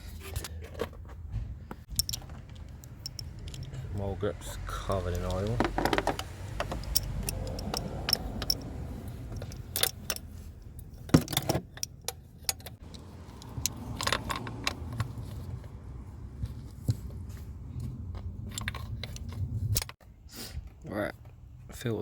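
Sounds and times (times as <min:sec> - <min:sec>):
low steady rumble: 0:00.0 - 0:20.0
metallic clinks of grips: 0:01.9 - 0:04.0, 0:04.9 - 0:08.7.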